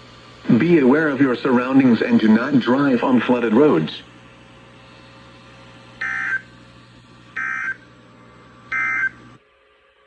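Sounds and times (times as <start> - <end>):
faint radio hum: 0.0 - 7.9.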